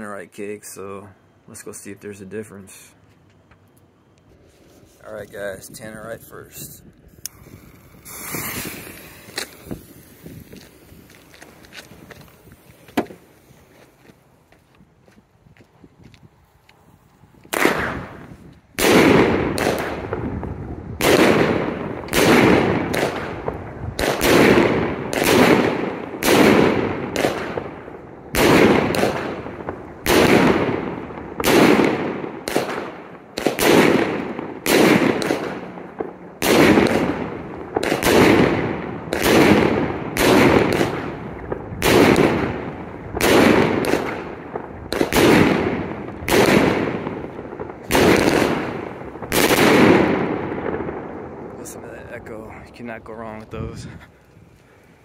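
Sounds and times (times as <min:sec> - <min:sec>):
rolling echo: 0:16.2 - 0:55.0
loud airburst salute bangs: 0:17.5 - 0:20.4, 0:21.0 - 0:51.7.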